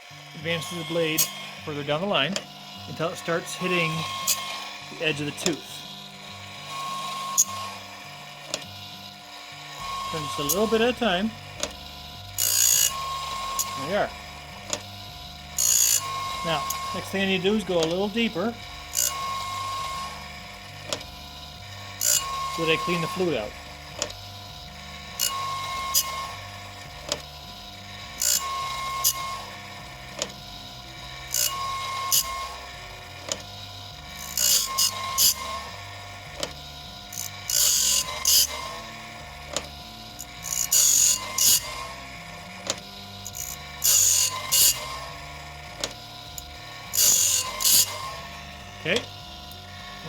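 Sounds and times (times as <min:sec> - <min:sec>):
grinding wheel hiss: 0:00.0 - 0:50.0
sharpener arm clicks: 0:08.5 - 0:08.8, 0:11.6 - 0:11.8, 0:14.6 - 0:14.9, 0:20.8 - 0:21.2, 0:23.9 - 0:24.3, 0:27.0 - 0:27.3, 0:30.1 - 0:30.4, 0:33.2 - 0:33.6, 0:36.3 - 0:36.6, 0:37.2 - 0:41.8, 0:42.6 - 0:45.0, 0:45.7 - 0:48.2.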